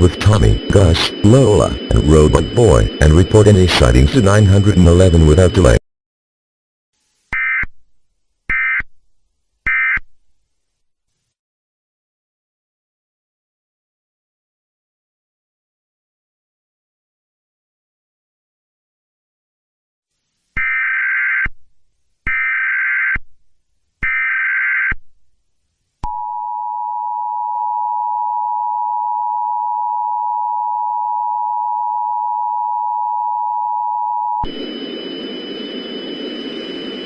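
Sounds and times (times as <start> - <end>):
steady hiss with high whine: 0.0 - 5.8, 34.4 - 37.0
two-tone attention signal: 0.0 - 5.8
warbling digital data bursts: 0.0 - 5.8.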